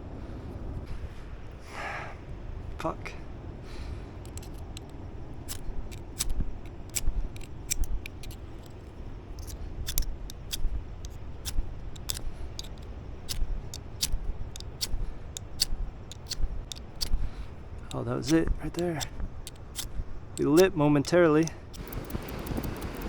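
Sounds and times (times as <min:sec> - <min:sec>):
scraper striking fire starter rod: 0:04.2 - 0:08.8, 0:09.4 - 0:23.0.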